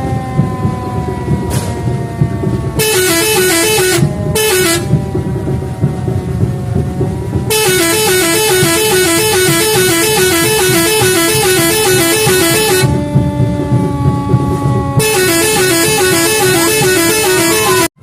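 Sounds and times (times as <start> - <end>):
truck engine rumble: 0.0 - 18.0
musical air horn tune: 2.8 - 4.9, 7.5 - 13.0, 15.0 - 18.0.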